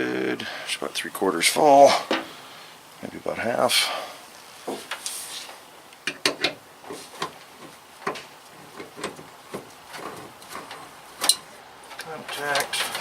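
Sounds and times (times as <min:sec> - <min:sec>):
oil filter clicks and knocks: 0:06.0 - 0:06.6, 0:07.2 - 0:12.1.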